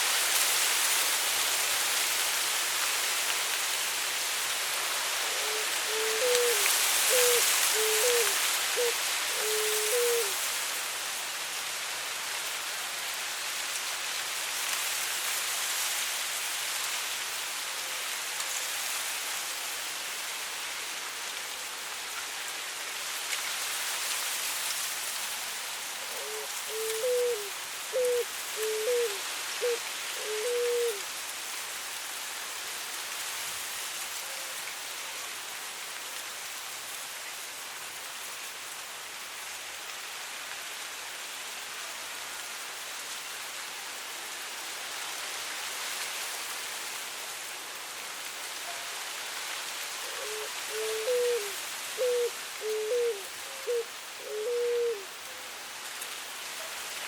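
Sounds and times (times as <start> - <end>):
wind hissing through dry grass: 0.0 - 57.0
dove cooing: 5.3 - 10.4, 26.1 - 31.0, 50.0 - 55.1.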